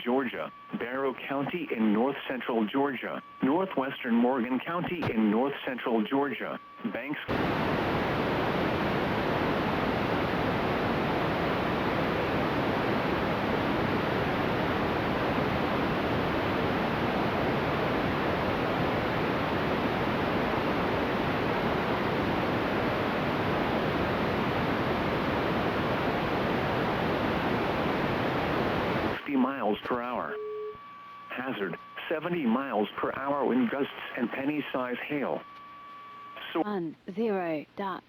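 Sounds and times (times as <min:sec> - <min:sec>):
static hiss: 0:07.1 - 0:30.3, 0:31.3 - 0:36.6.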